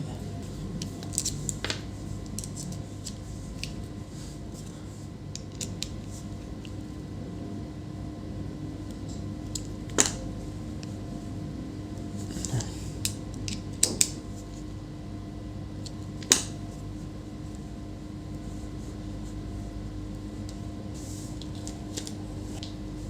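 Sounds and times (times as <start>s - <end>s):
low hum: 0.0s - 23.0s
screwdriver and small parts clicking: 5.3s - 6.0s.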